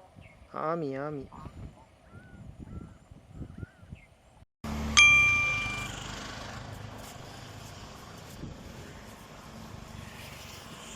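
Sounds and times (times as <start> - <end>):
low hum: 4.7 - 7.9
bright bell ding: 5.0 - 6.1.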